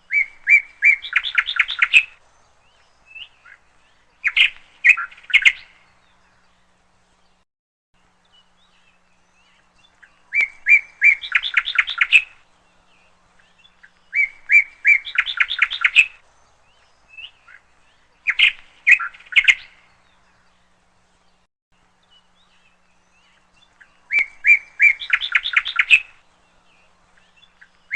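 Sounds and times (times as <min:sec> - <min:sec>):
bird singing: 0:00.0 - 0:07.4, 0:08.0 - 0:27.9
sharp bird chirps: 0:00.1 - 0:02.2, 0:04.2 - 0:05.8, 0:08.9 - 0:12.4, 0:13.5 - 0:16.2, 0:18.2 - 0:19.8, 0:22.6 - 0:26.2.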